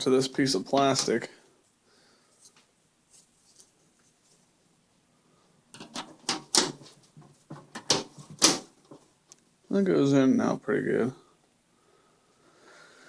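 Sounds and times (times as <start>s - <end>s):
plastic piece clicking and knocking: 5.7s - 6.9s, 7.5s - 8.7s.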